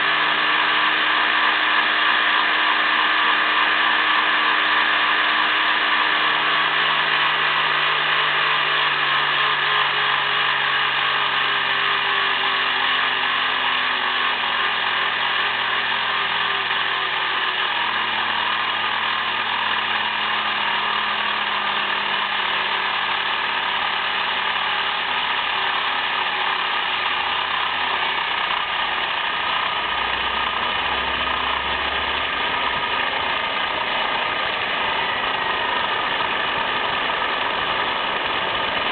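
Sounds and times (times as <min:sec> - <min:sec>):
high-pitched whine: 0:00.0 - 0:38.9
car engine idling: 0:14.7 - 0:38.9.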